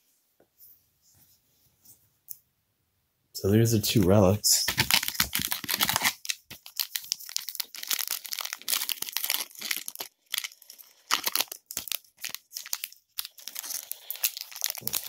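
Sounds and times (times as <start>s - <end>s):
foil wrapper crinkling and tearing: 4.6s - 15.0s.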